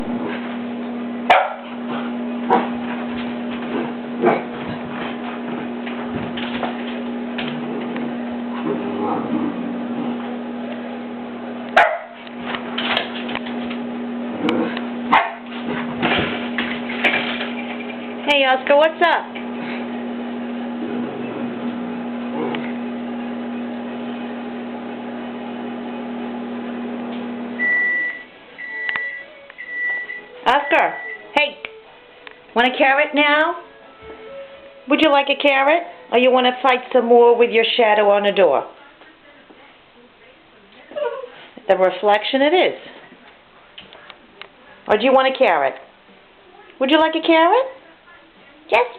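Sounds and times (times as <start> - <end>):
steady low hum: 0.0 - 28.7
puppy barking: 1.3 - 1.8, 11.8 - 12.3, 15.1 - 15.5.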